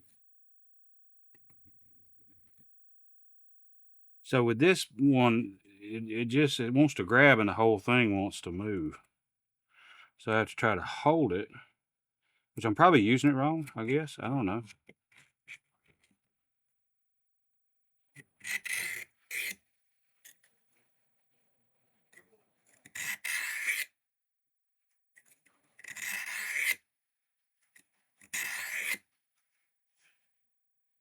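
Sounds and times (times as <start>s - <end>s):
knife rasping on sharpener: 18.4s - 19.6s, 22.8s - 23.9s, 25.8s - 26.8s, 28.2s - 29.0s.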